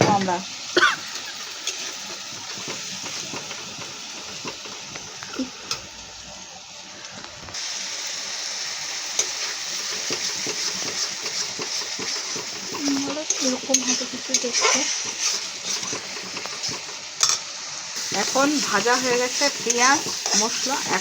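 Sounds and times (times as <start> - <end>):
masala sizzling in hot oil: 0.0 - 21.0
spatula scraping pan: 9.2 - 17.4, 18.0 - 21.0.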